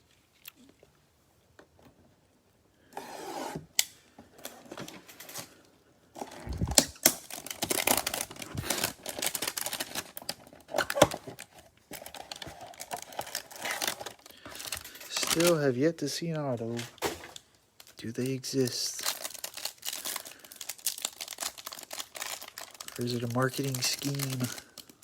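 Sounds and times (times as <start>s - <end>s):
packaging tearing and crinkling: 6.2s - 15.6s, 16.7s - 25.0s.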